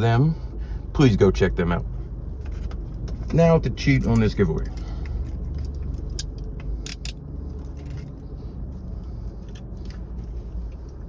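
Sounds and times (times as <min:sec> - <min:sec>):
steady low hum: 0:00.0 - 0:11.0
handcuffs clicking and rattling: 0:05.4 - 0:08.2.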